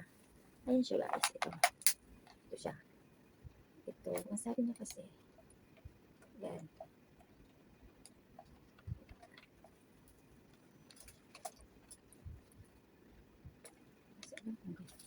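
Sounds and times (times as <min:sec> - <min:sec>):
faint clicks and light knocks: 0:04.2 - 0:12.8.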